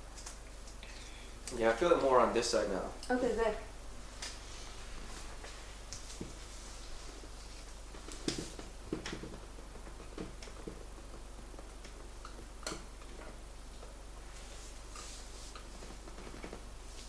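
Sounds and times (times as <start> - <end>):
low steady hum: 0.0 - 17.0
clicks taps and rustles on padded table: 6.0 - 6.4, 8.0 - 13.9.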